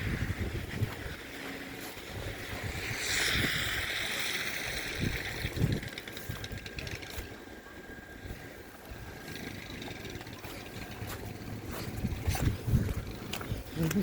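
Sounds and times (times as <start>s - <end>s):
vehicle passing hiss: 0.0s - 7.2s
wind noise on microphone: 0.0s - 14.0s.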